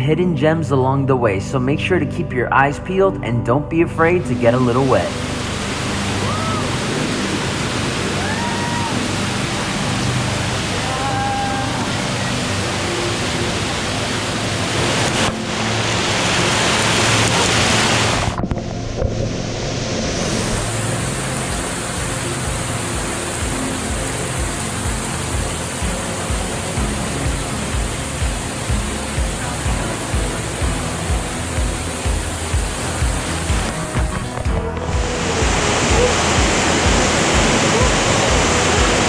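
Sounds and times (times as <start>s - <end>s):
faint background music: 0.0s - 39.0s
waterfall rushing: 4.1s - 39.0s.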